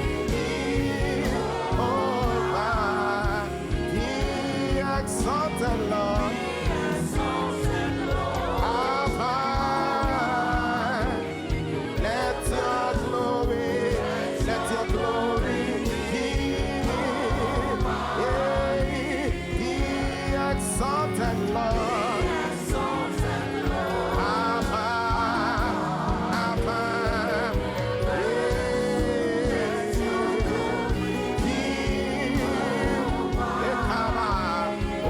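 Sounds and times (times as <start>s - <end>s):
band with steady low beat: 0.0s - 35.0s
voices singing gospel: 0.0s - 35.0s.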